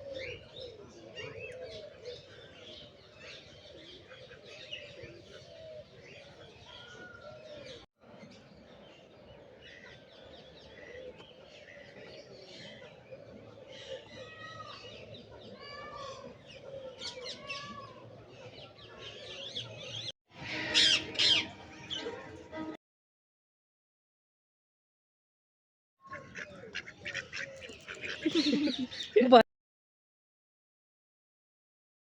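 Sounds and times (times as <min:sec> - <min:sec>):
birds calling and chirping: 0:00.0 - 0:22.8, 0:26.0 - 0:29.4
shrill bird calls: 0:20.4 - 0:22.1.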